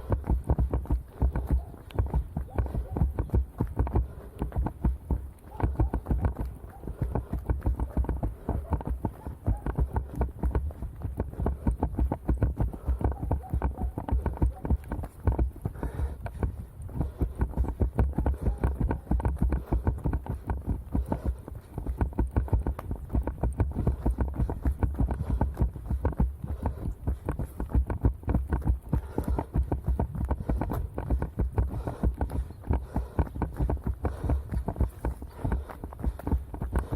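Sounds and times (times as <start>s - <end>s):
running footsteps on snow: 0.0s - 36.9s.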